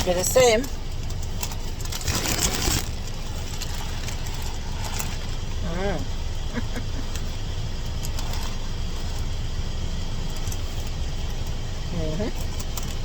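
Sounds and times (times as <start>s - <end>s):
bus engine idling: 0.0s - 13.0s.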